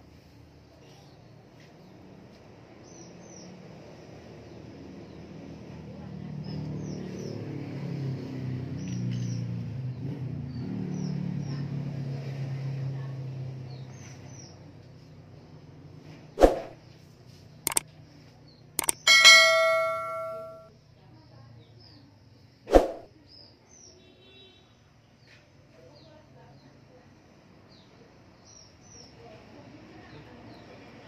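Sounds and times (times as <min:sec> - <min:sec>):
sharp clicks: 0:18.8 - 0:20.6
bright ringing ding: 0:18.8 - 0:20.7.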